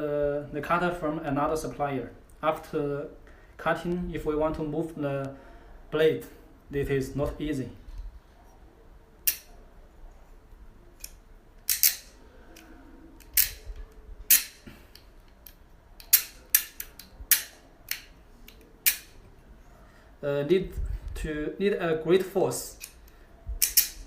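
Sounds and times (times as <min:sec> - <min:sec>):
cable cutter clicking: 0:11.0 - 0:13.6, 0:22.8 - 0:24.0.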